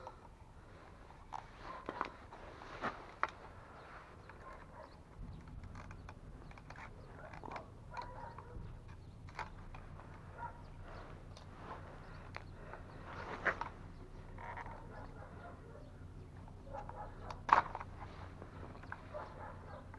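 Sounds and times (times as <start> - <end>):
faint low hum: 3.4 - 19.9
plastic parts creaking and clicking: 4.2 - 15.0, 16.3 - 19.3.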